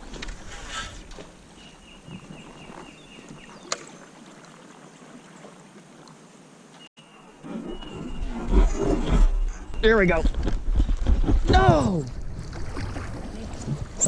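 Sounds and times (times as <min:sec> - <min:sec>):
water splashing: 0:00.0 - 0:06.3, 0:11.6 - 0:14.0.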